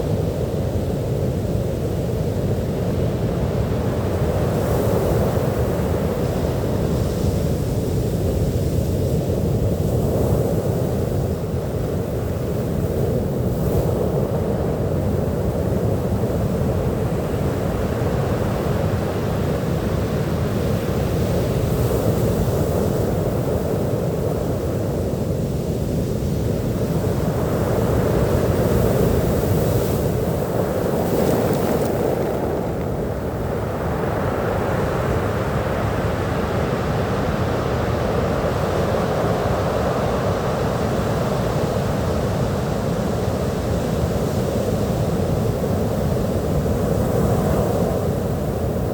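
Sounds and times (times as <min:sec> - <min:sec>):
sea waves washing onto beach: 0:16.1 - 0:48.9.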